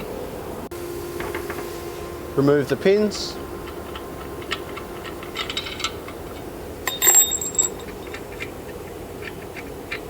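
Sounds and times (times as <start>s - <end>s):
loud ringing clink: 2.3s - 8.2s
steel parts clinking on metal: 4.5s - 6.2s, 6.8s - 8.5s.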